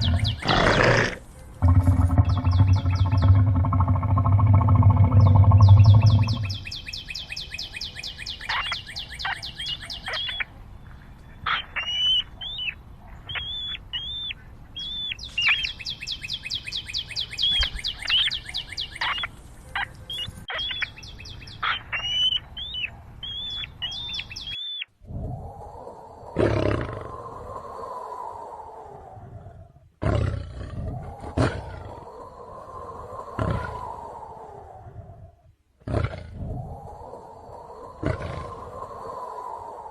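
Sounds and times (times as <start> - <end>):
high bird-like chirping: 0.0 - 1.0, 2.1 - 3.6, 5.0 - 10.5, 11.3 - 24.9
large animal roaring: 0.0 - 6.6, 26.2 - 27.5, 28.7 - 39.0.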